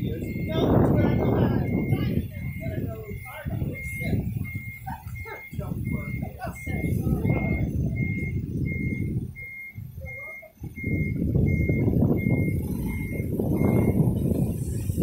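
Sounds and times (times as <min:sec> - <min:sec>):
reverse alarm beeping: 0:00.0 - 0:15.0
loud engine running: 0:10.7 - 0:15.0.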